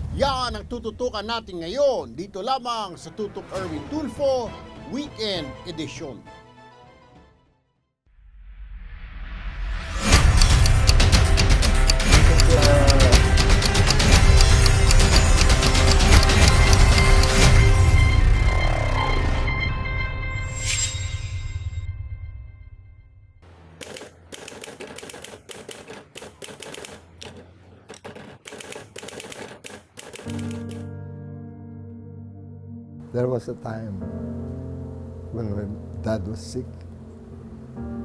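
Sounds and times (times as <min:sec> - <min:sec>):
music with fast beat and heavy bass: 0:10.3 - 0:17.5
typewriter keys clacking: 0:10.4 - 0:17.5, 0:23.8 - 0:30.9.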